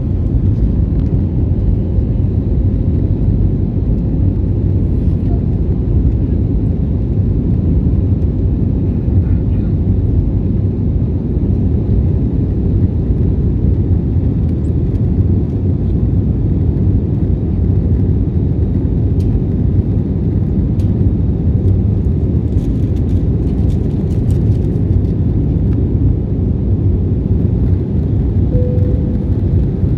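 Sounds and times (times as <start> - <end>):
jet engines rumbling: 0.0 - 29.9
short steady tone: 28.6 - 29.9.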